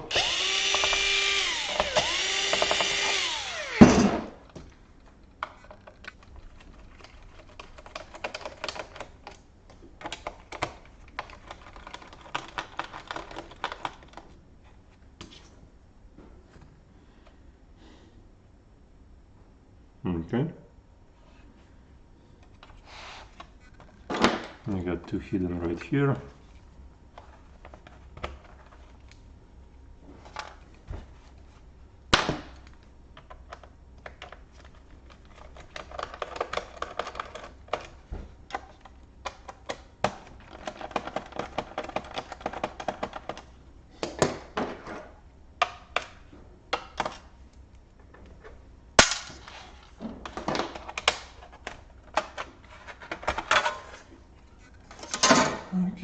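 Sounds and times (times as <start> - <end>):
screwdriver clicking and scraping: 0.1 - 3.8.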